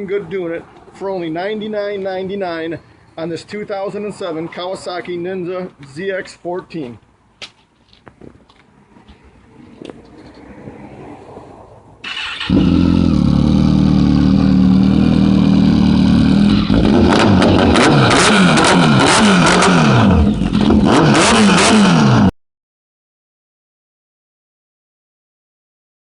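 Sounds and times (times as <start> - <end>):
motorcycle engine idling and revving: 12.0 - 22.3.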